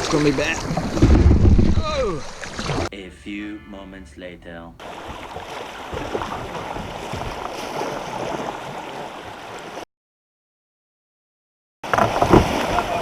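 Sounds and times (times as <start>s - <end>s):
small knocks and splashes: 0.0s - 2.9s, 4.8s - 8.8s, 11.8s - 13.0s
creek water rushing: 4.8s - 9.8s.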